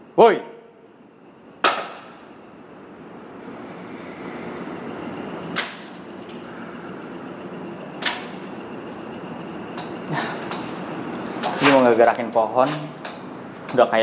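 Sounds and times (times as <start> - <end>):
night insects chirring: 0.0 - 14.0
sharp cracks: 1.6 - 2.2, 5.6 - 6.0, 8.0 - 8.4.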